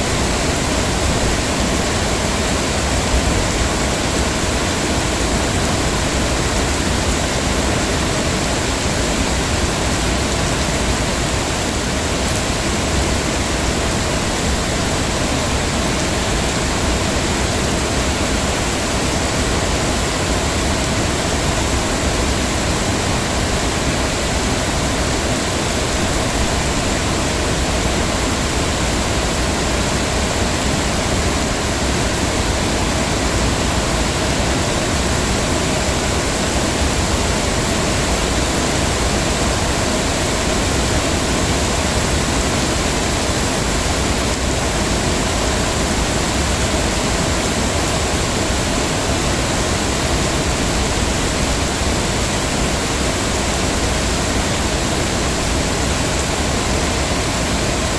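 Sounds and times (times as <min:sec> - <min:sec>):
heavy rain falling: 0:00.0 - 0:57.9.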